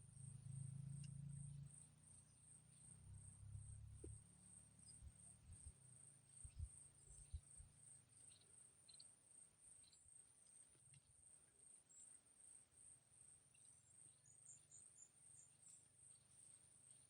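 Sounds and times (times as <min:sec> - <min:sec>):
high-pitched insect trill: 0:00.2 - 0:10.3.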